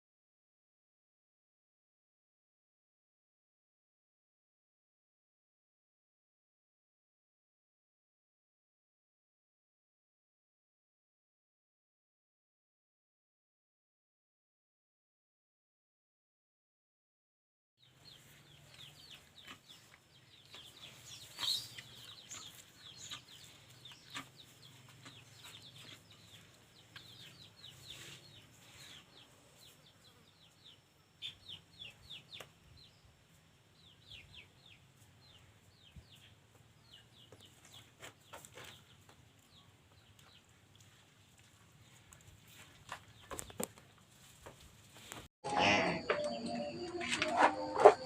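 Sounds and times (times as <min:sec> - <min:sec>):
chickens peeping: 0:17.9 - 0:33.0, 0:33.8 - 0:44.0, 0:45.0 - 0:48.0.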